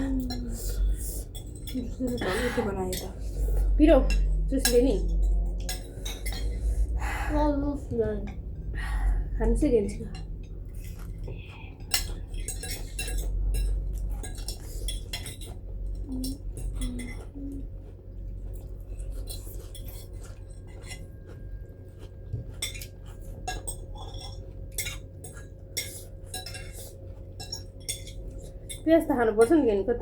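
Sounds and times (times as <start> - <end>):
cutlery clinking on plates: 11.8 - 15.6, 22.4 - 28.8.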